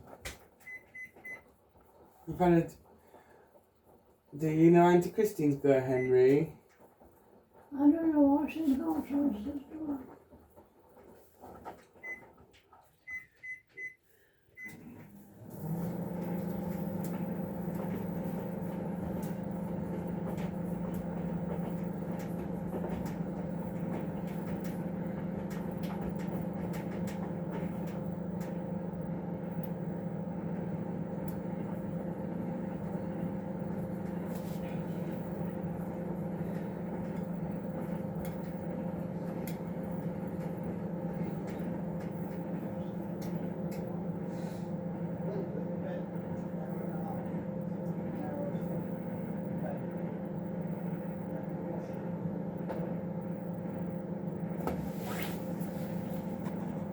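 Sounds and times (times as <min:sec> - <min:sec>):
washing machine motor hum: 0:00.0 - 0:56.9
appliance control panel beeps: 0:00.6 - 0:01.4, 0:05.9 - 0:06.5, 0:12.0 - 0:12.2, 0:13.0 - 0:14.0, 0:14.6 - 0:15.0.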